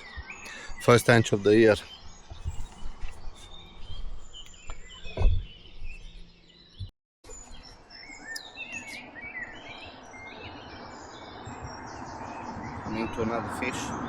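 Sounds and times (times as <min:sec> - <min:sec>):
outdoor background noise: 0:00.0 - 0:14.0
small birds chirping and singing: 0:00.0 - 0:14.0
dull thump: 0:05.0 - 0:05.5.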